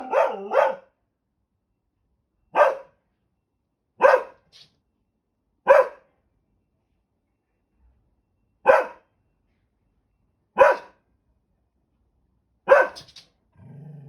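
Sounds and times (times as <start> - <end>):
dog barking: 0.0 - 1.0, 2.5 - 3.0, 4.0 - 4.4, 5.7 - 6.1, 8.7 - 9.1, 10.6 - 11.0, 12.7 - 13.1.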